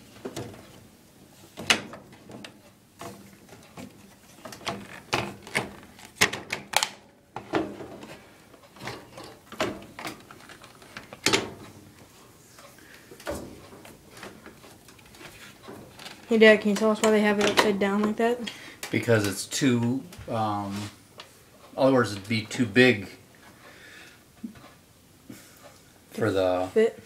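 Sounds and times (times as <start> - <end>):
clicks and knocks of parts handled: 1.6 - 11.7.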